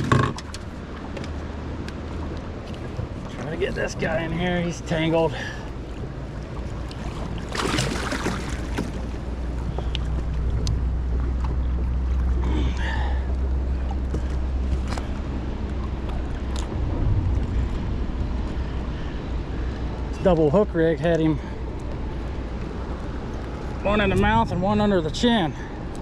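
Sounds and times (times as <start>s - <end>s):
river water rushing: 4.3s - 20.1s
wind buffeting microphone: 14.4s - 20.2s.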